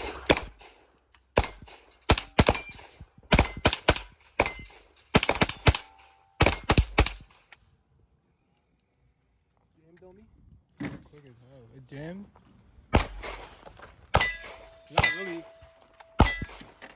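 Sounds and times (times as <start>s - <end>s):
rifle shots: 0.0s - 7.5s, 12.9s - 16.8s.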